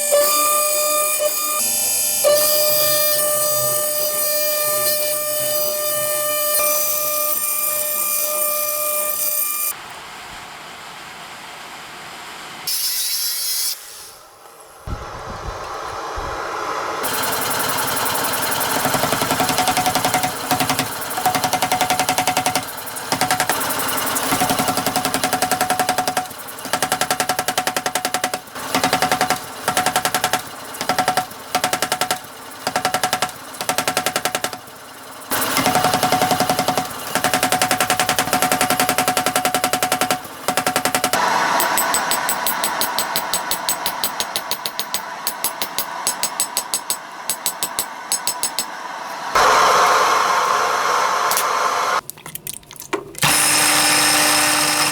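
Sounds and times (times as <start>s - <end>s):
cutter chattering on metal: 0.2s - 9.7s, 17.0s - 48.7s, 53.2s - 54.9s
mill spindle whining: 14.9s - 25.3s, 40.2s - 52.0s, 53.2s - 54.9s.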